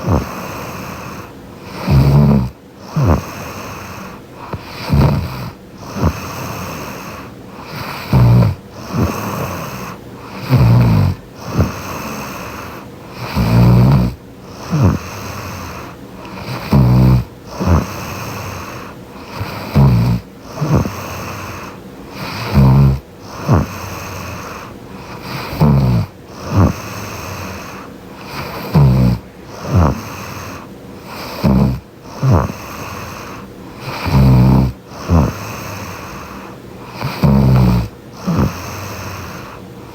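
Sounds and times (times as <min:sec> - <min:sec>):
woman snoring: 0:00.0 - 0:39.9
soft breath out: 0:34.9 - 0:37.3.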